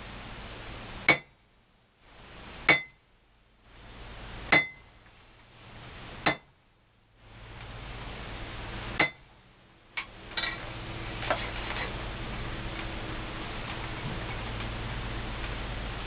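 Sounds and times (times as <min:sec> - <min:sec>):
hammer striking chisel on iron: 0:01.1 - 0:01.3, 0:02.7 - 0:03.0, 0:04.5 - 0:04.8, 0:06.2 - 0:06.5, 0:09.0 - 0:09.2.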